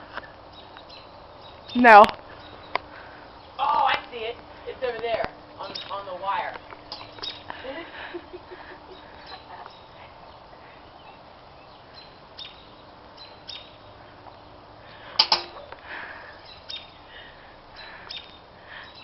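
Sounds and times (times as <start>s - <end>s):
outdoor hiss: 0.0s - 19.0s
loud sharp click: 15.2s - 15.6s.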